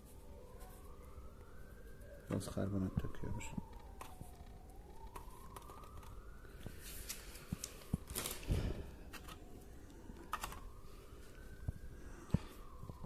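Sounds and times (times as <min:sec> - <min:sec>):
plastic parts clicking and rustling: 0:09.1 - 0:09.5, 0:10.2 - 0:10.7.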